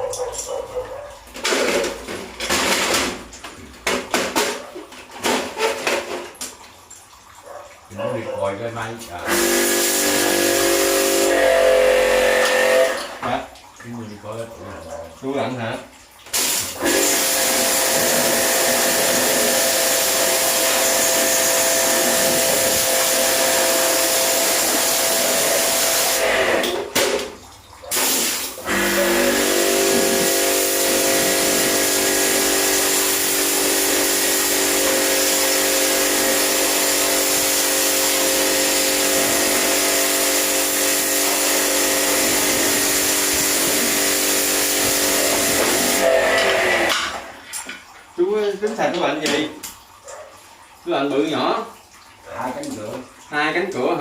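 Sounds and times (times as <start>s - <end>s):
pressure washer motor whining: 9.2s - 13.1s, 16.8s - 26.7s, 28.0s - 47.0s
water spray hissing: 9.3s - 11.4s, 16.3s - 26.3s, 27.9s - 46.1s.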